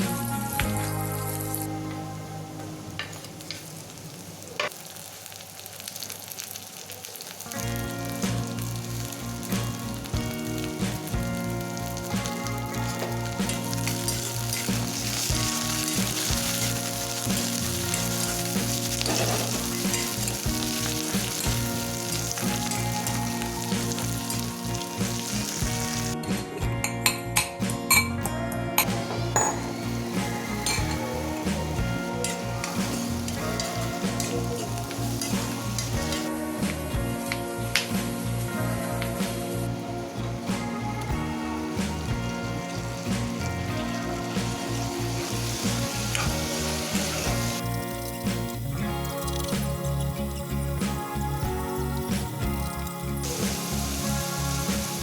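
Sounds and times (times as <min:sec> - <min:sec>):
background music with beat: 0:00.0 - 0:02.7, 0:07.6 - 0:55.0
food frying in oil: 0:02.8 - 0:26.2, 0:28.9 - 0:36.8, 0:41.8 - 0:55.0.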